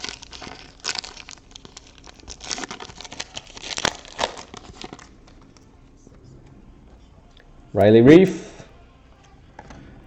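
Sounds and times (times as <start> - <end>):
foil wrapper crinkling and tearing: 0.0 - 5.6.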